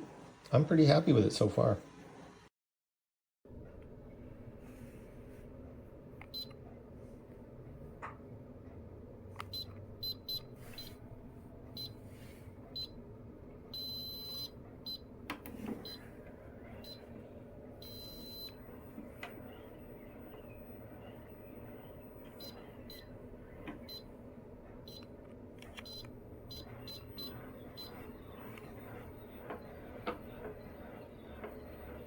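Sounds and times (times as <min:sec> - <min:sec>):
pedal exerciser motor hum: 0:03.5 - 0:32.0
longer electronic beeps: 0:09.5 - 0:11.0, 0:13.8 - 0:15.1, 0:16.7 - 0:17.2, 0:17.8 - 0:23.2, 0:25.8 - 0:32.0.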